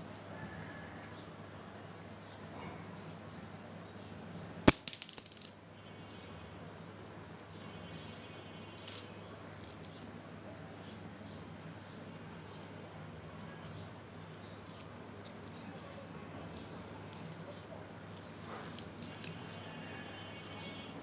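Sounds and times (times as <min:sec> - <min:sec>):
coin clattering on hard surface: 0:04.7 - 0:05.6, 0:08.8 - 0:10.0.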